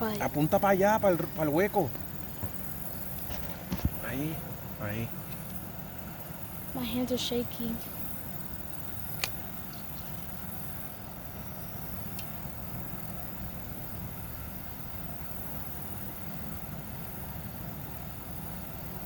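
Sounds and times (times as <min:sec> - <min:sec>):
hiss: 0:00.0 - 0:19.0.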